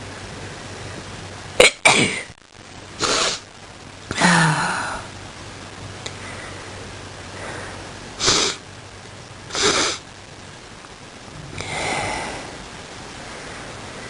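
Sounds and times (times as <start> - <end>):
breathy breath: 6.1 - 6.7, 7.3 - 8.4, 11.6 - 12.6.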